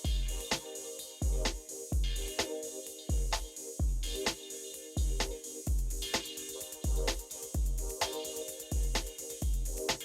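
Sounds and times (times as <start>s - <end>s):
kick drum thumps: 0.0s - 0.4s, 1.2s - 2.3s, 3.1s - 4.2s, 5.0s - 6.1s, 6.8s - 7.9s, 8.7s - 9.8s.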